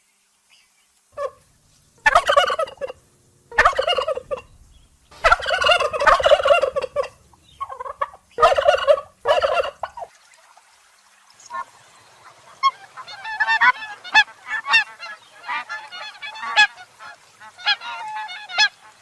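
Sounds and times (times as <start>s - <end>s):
turkey gobbling: 1.2s - 1.4s, 2.0s - 10.1s, 12.5s - 16.8s, 17.6s - 18.8s.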